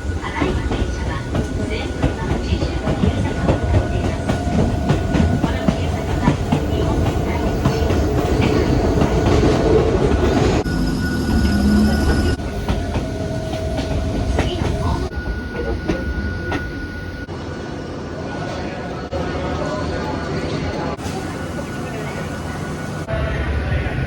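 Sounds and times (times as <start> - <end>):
train wheels rumbling on rail: 0.0 - 19.0.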